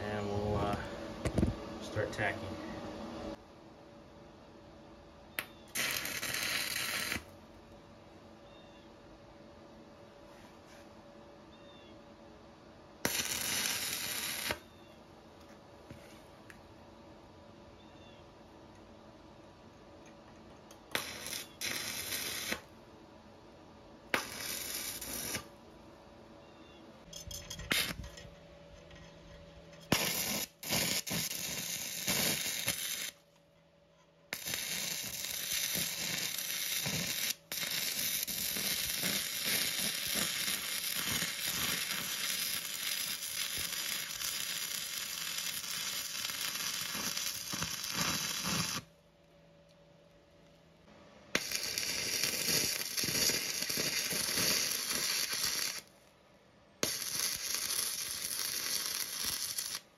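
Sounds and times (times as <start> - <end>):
welding arc crackling and hissing: 0.0 - 2.4, 5.7 - 7.3, 13.0 - 14.7, 20.9 - 22.7, 24.1 - 25.5, 27.7 - 28.1, 29.9 - 33.2, 34.3 - 48.9, 51.4 - 55.9, 56.8 - 59.9.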